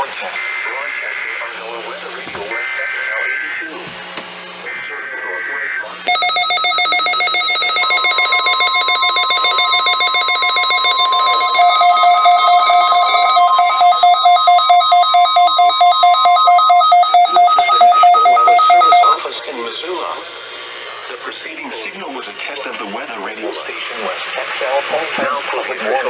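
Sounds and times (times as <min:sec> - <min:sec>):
steady warning alarm tone: 0:02.5 - 0:03.7, 0:04.6 - 0:19.2
fast pulsing electronic alarm beeps: 0:06.1 - 0:19.2.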